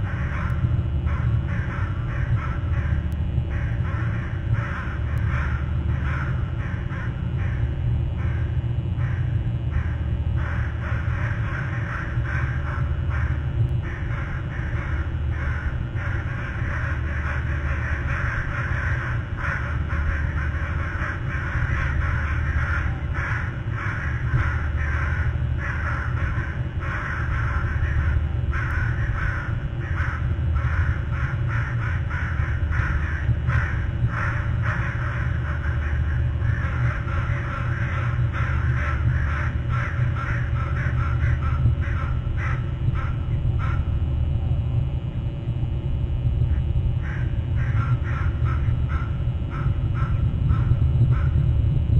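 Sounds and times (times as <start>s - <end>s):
steady low hum: 0.0s - 51.9s
crows cawing: 1.1s - 44.0s, 47.0s - 51.4s.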